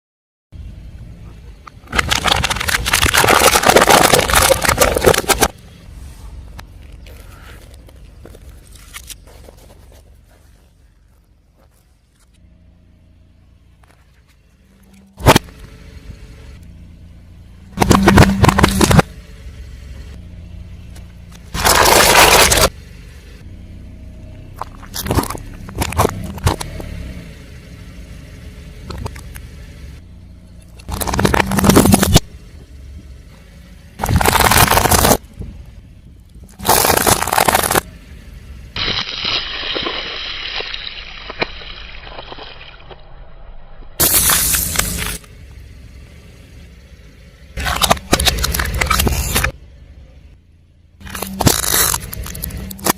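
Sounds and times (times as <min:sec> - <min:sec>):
low steady rumble: 0:00.5 - 0:52.9
car tyres crushing crunchy objects: 0:01.2 - 0:16.6, 0:17.2 - 0:22.8, 0:24.3 - 0:43.3, 0:43.9 - 0:49.6, 0:51.0 - 0:52.9
sharp crack: 0:01.7 - 0:05.6, 0:36.6 - 0:37.9, 0:44.0 - 0:45.3.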